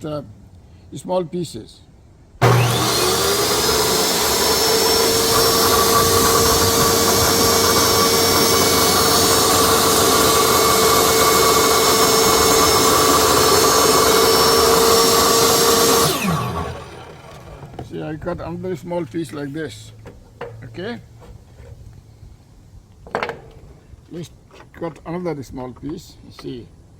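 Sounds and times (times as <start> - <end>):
saw cutting wood: 2.4 - 17.9
table saw whining: 2.4 - 18.4.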